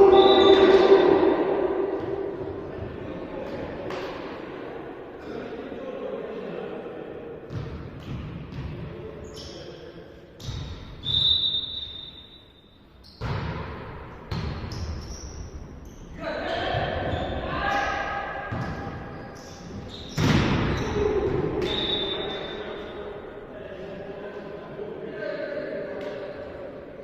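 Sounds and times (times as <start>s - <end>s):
referee's whistle blast: 0.0s - 1.4s, 11.0s - 12.7s, 21.6s - 22.8s
sports hall noise: 0.0s - 27.0s.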